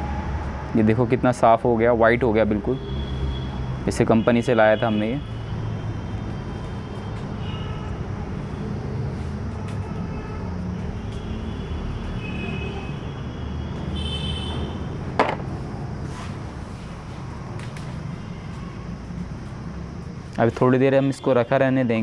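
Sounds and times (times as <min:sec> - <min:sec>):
sharp knock: 0:15.2 - 0:15.6.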